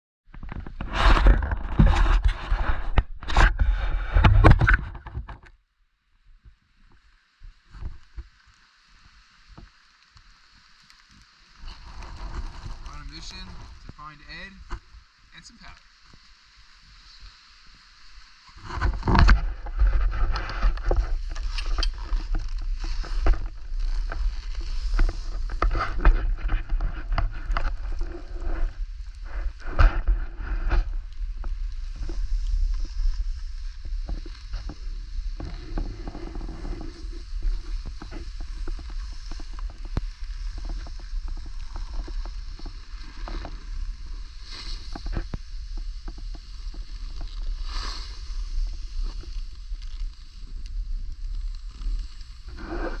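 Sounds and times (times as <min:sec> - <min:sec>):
wind on microphone: 0:00.4 - 0:05.4, 0:16.1 - 0:53.0
skis scraping through snow: 0:00.6 - 0:04.8, 0:06.9 - 0:53.0.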